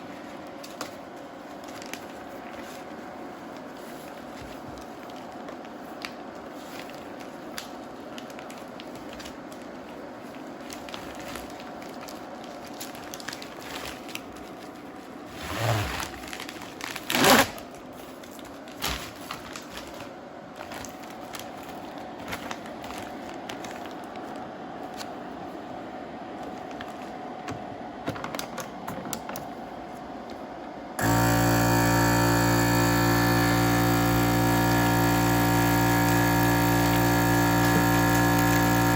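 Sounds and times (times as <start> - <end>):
plastic bag crinkling: 0.0 - 25.2, 31.0 - 38.9
vacuum sealer pump hum: 14.9 - 17.1, 28.8 - 38.9.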